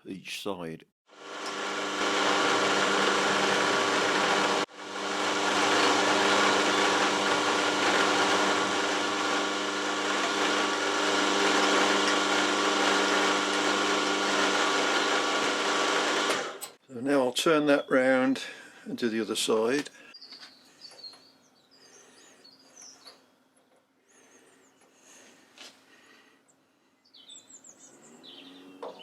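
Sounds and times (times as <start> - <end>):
milling machine motor hum: 1.1 - 16.8.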